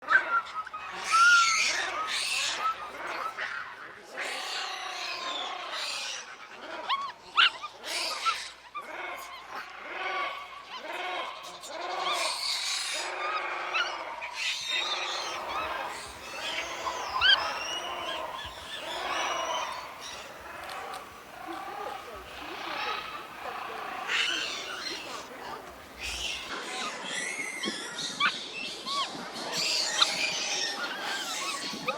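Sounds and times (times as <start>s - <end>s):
monkeys calling: 13.8s - 27.8s.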